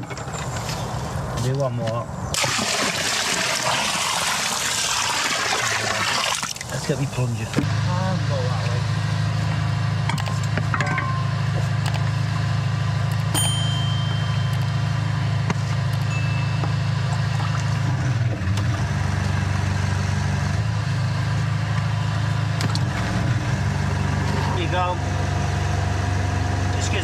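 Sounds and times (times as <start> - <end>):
engine running steadily: 6.5 - 27.0.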